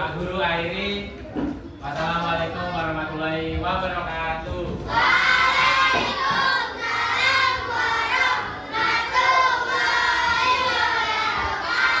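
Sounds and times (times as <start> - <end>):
children chanting in unison: 4.9 - 12.0.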